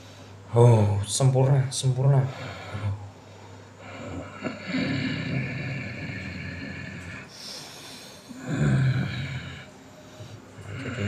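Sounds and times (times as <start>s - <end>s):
breathy hiss: 2.2s - 11.0s.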